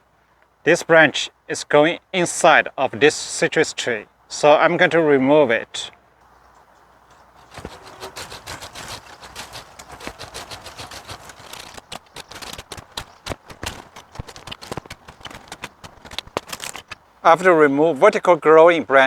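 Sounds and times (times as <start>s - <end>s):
leafy branches rustling and cracking: 6.2s - 17.4s
branch clicks and snaps: 7.1s - 17.0s.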